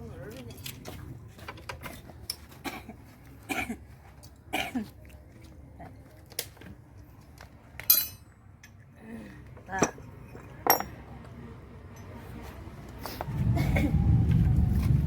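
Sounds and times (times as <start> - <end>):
hand tools and metal parts clicking: 0.2 - 2.6, 6.1 - 11.3.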